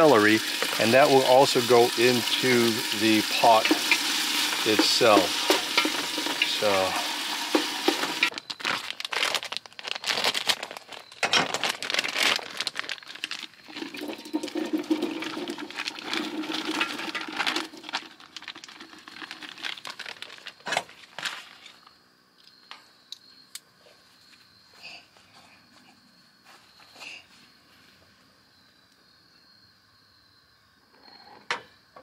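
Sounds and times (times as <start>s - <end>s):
crinkling and rustling of food: 0.0s - 22.0s
cookware knocking: 3.6s - 8.3s.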